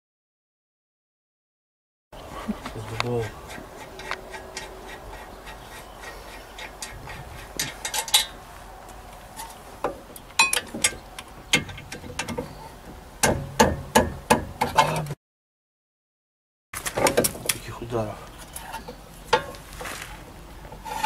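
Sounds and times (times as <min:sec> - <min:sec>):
hammer strikes: 0:13.2 - 0:14.8.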